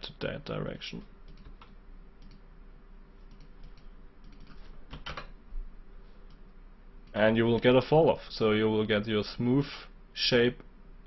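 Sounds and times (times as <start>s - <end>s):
faint steady hum: 0.0s - 11.0s
computer keyboard clicks: 1.3s - 2.4s, 3.3s - 5.3s.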